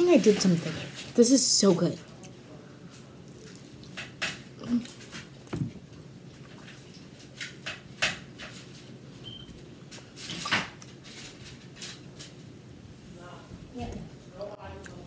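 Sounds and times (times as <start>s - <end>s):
chewing and lip-smacking: 3.2s - 4.0s.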